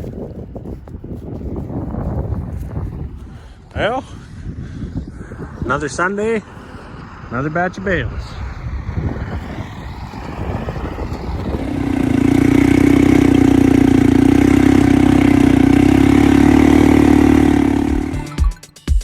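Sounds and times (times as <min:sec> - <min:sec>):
engine revving: 0:08.2 - 0:18.5
music: 0:17.9 - 0:19.0.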